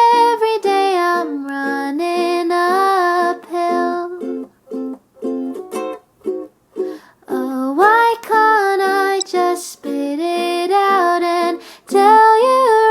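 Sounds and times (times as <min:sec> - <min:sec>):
woman singing: 0:00.0 - 0:04.5, 0:07.3 - 0:12.9
strummed ukulele chords: 0:01.2 - 0:07.5.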